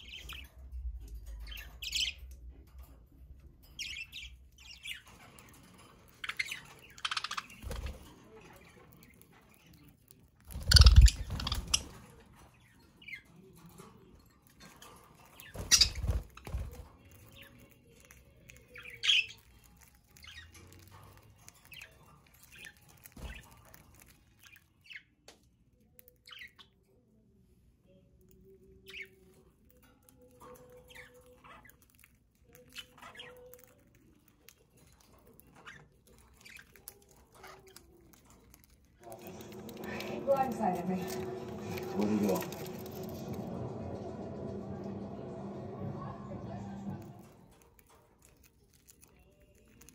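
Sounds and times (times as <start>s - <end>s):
budgies chirping and squawking: 0.0s - 3.0s, 3.6s - 13.9s, 14.6s - 25.1s, 26.2s - 26.7s, 28.8s - 44.7s
wings fluttering: 7.0s - 8.2s, 10.4s - 12.2s, 15.4s - 17.4s, 22.4s - 24.6s, 39.0s - 45.4s.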